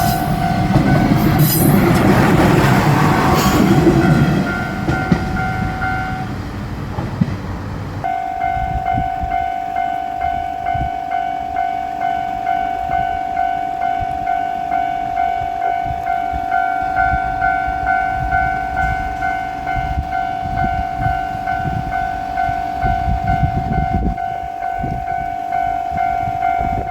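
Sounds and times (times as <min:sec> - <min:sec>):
level crossing bell ringing: 0:08.1 - 0:26.9.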